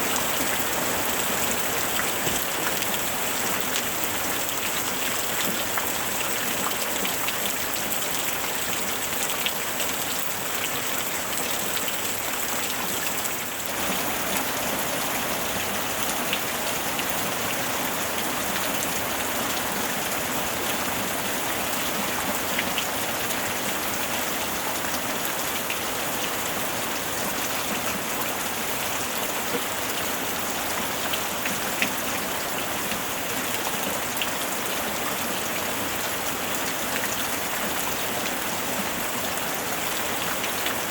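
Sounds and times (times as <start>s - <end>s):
steady rain falling: 0.0s - 40.9s
raindrops ticking on a surface: 0.2s - 14.7s.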